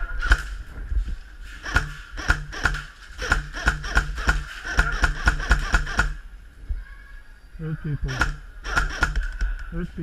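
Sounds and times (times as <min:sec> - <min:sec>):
airsoft gun shots: 0:01.6 - 0:06.3, 0:08.1 - 0:09.5.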